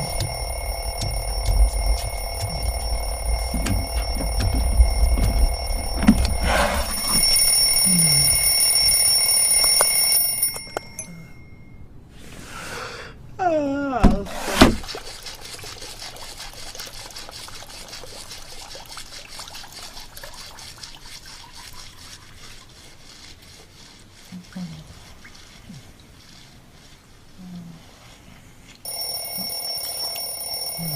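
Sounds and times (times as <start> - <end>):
alarm clock ringing: 0.0 - 11.8, 28.8 - 30.9.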